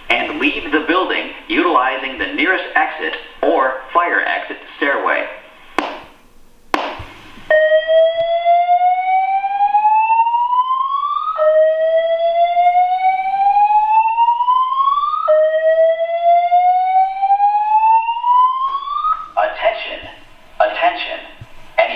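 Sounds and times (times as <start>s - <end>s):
fire alarm slow-whoop tone: 7.5s - 19.4s.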